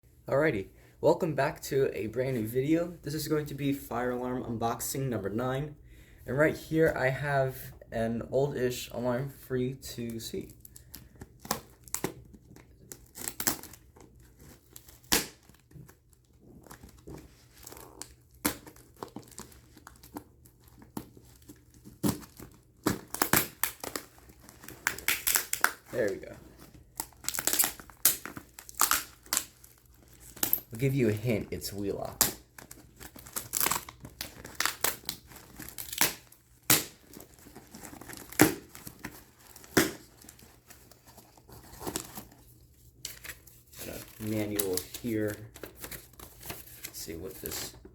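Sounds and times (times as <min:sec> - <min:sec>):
packaging crinkling and tearing: 0:10.1 - 0:47.9.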